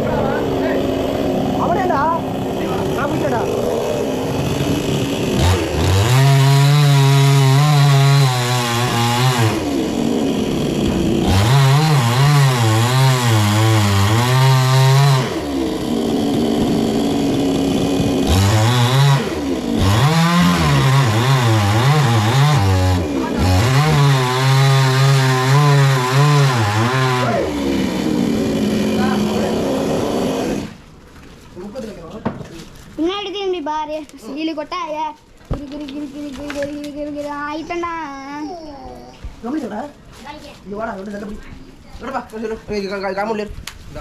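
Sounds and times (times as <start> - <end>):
chainsaw cutting wood: 0.0 - 31.0.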